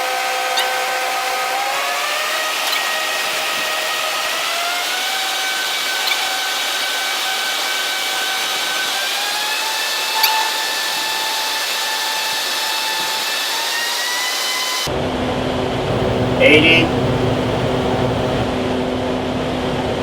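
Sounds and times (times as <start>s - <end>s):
large fans blowing with whine: 14.9s - 20.0s.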